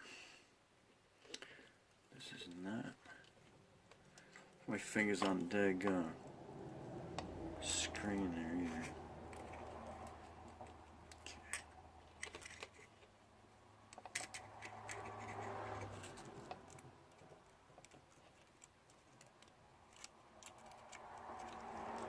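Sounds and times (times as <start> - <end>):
small parts clicking and scratching: 2.5 - 6.1, 7.1 - 22.0
low hum: 5.8 - 17.1.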